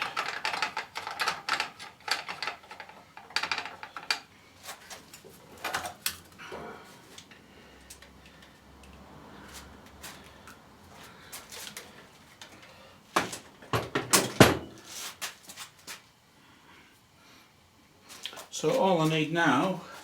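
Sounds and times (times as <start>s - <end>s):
small parts and tools clinking: 0.0s - 6.2s.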